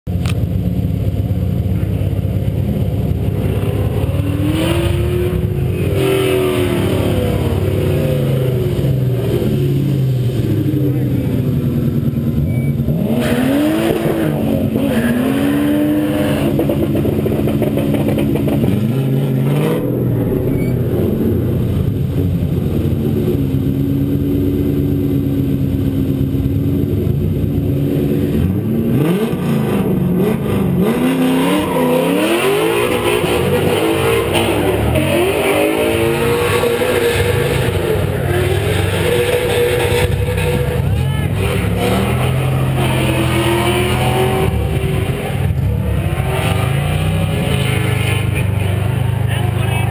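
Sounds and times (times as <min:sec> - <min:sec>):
car engine accelerating hard: 0:00.1 - 0:49.9.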